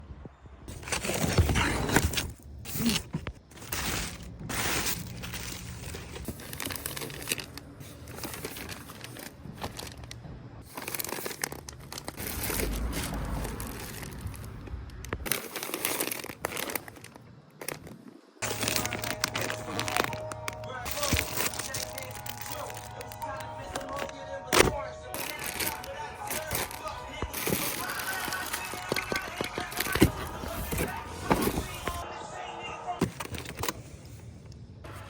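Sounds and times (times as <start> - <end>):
packaging crinkling and tearing: 0.7 - 32.0.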